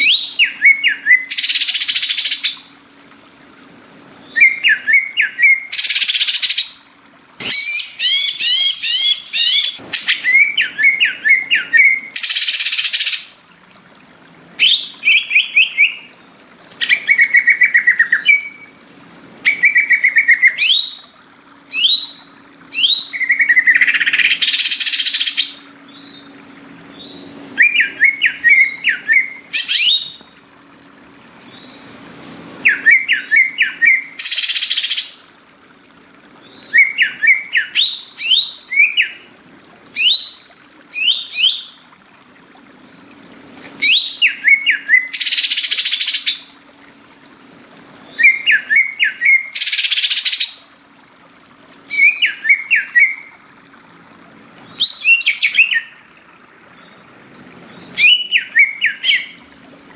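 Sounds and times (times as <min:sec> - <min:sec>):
bird trilling and whistling: 0:00.0 - 0:02.6, 0:04.2 - 0:06.8, 0:07.4 - 0:13.4, 0:14.6 - 0:16.2, 0:16.8 - 0:18.7, 0:19.4 - 0:21.1, 0:21.7 - 0:26.3, 0:26.9 - 0:30.4, 0:32.6 - 0:35.2, 0:36.5 - 0:39.3, 0:40.0 - 0:41.8, 0:43.8 - 0:46.5, 0:48.1 - 0:50.7, 0:51.9 - 0:53.3, 0:54.6 - 0:56.0, 0:57.7 - 0:59.4.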